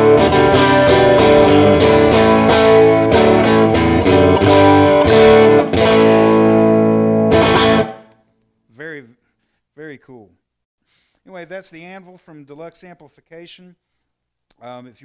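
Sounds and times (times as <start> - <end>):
electric guitar chords strummed: 0.0 - 8.2.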